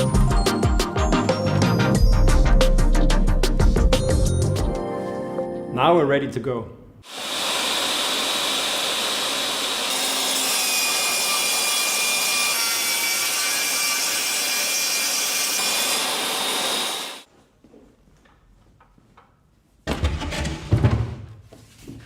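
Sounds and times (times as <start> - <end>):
table saw cutting wood: 7.0 - 17.3.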